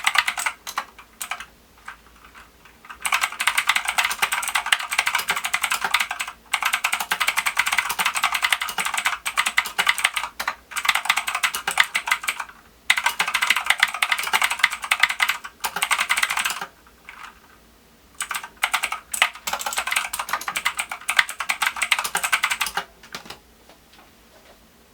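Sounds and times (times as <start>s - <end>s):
mechanical keyboard typing: 0.0s - 17.4s, 18.2s - 23.4s.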